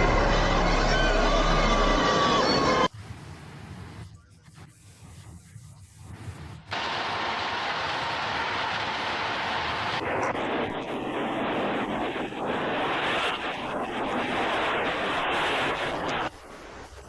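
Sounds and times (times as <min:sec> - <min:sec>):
loud rush of water: 0:06.7 - 0:10.0.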